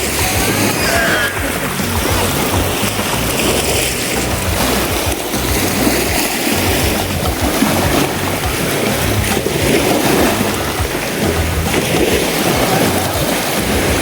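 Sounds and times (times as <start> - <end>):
background music: 0.0 - 14.0
rushing water: 0.0 - 14.0.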